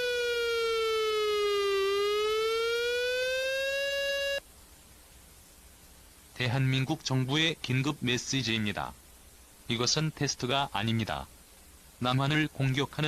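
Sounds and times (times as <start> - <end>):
siren tone falling and rising: 0.0 - 4.4
faint hiss: 0.0 - 13.0.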